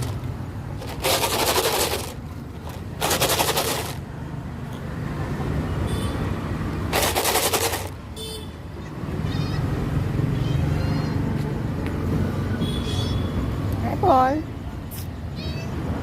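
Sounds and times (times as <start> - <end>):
dry cat food rattling in container: 0.0 - 4.0, 6.9 - 8.0.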